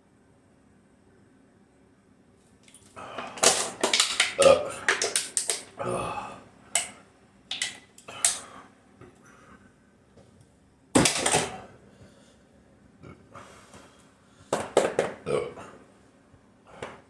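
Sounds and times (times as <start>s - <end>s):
person chugging a drink: 3.0s - 7.0s
aluminium can clinking: 3.2s - 5.7s, 7.5s - 8.4s.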